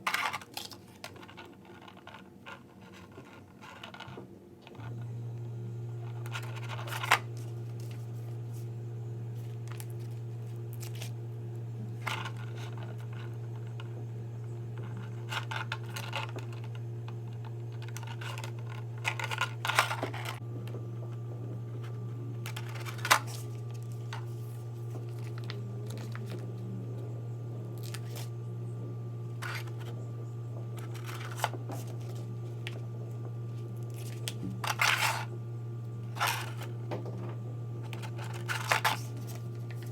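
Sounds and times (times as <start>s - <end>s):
steady low hum: 2.6s - 39.9s
handling scrapes and rustles: 6.0s - 11.2s, 11.8s - 14.0s, 21.8s - 27.1s, 27.7s - 28.4s, 29.3s - 35.4s, 36.0s - 39.9s.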